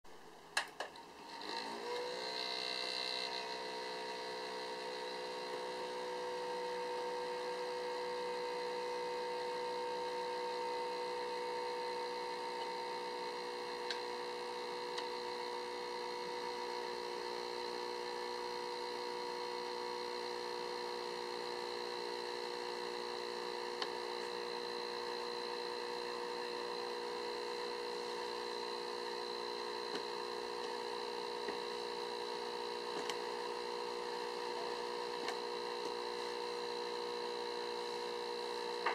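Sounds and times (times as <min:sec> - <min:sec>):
graphics card fan whining: 0:00.1 - 0:38.9.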